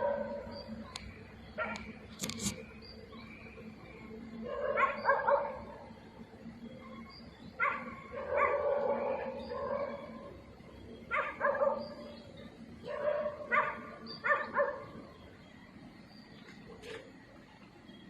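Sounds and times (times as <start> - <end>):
dog barking: 0.0 - 0.4, 1.6 - 1.9, 4.4 - 5.8, 7.6 - 10.3, 11.1 - 12.0, 12.8 - 15.0.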